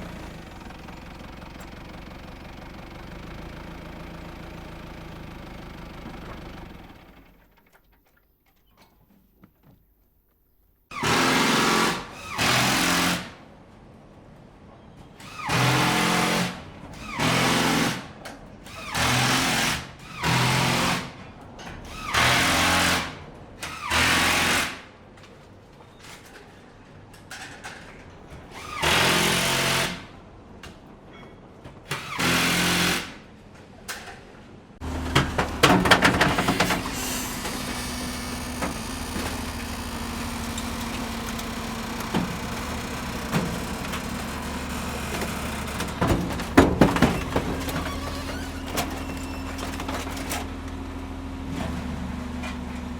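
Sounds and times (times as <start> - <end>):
engine running: 0.0 - 7.5, 34.8 - 52.9
jackhammer bursts: 34.8 - 50.5.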